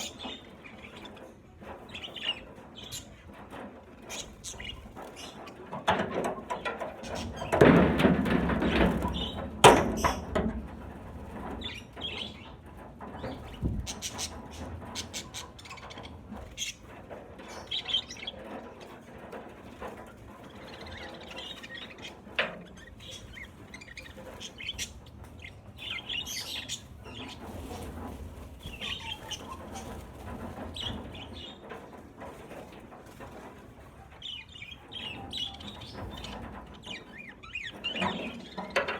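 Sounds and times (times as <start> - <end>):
budgerigars chirping and chattering: 0.0 - 5.7, 11.4 - 12.6, 13.2 - 18.5, 20.4 - 27.8, 28.6 - 30.0, 34.2 - 38.9.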